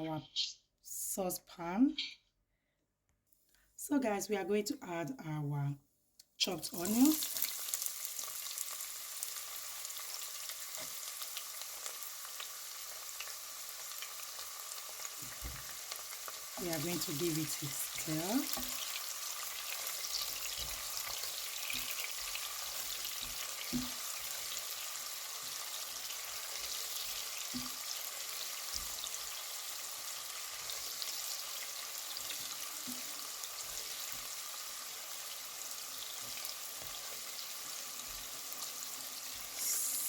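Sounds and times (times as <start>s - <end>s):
onions sizzling in oil: 6.5s - 40.0s.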